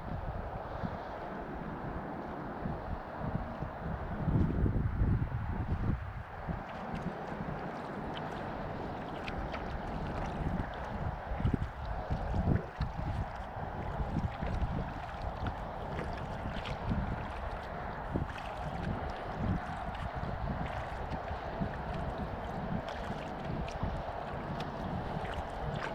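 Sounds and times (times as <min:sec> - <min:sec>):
water dripping and gurgling: 0:02.2 - 0:25.9
paddle strokes in water: 0:05.6 - 0:25.9.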